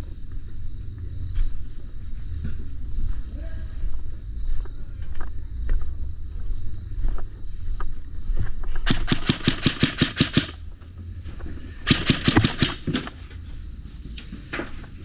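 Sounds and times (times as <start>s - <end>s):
airsoft guns firing: 8.8s - 10.6s, 11.8s - 13.1s.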